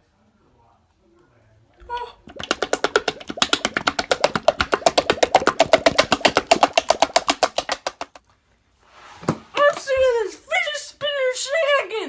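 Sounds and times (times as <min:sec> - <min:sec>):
fast percussive music: 0:02.2 - 0:08.2.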